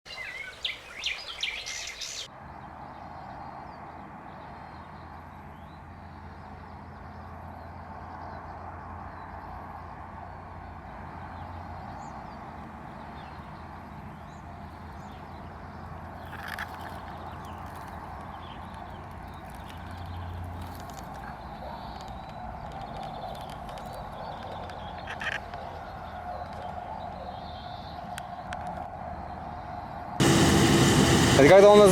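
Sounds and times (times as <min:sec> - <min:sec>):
birds chirping faintly: 0:00.1 - 0:30.2
combine harvester engine hum: 0:30.2 - 0:31.9.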